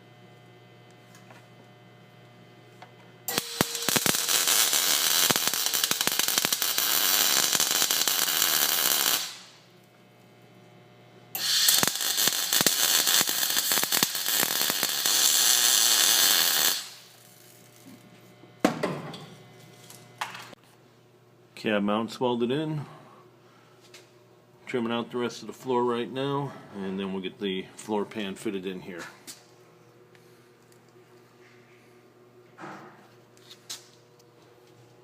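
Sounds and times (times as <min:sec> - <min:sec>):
crackling welding: 0:03.3 - 0:09.9, 0:11.3 - 0:18.1.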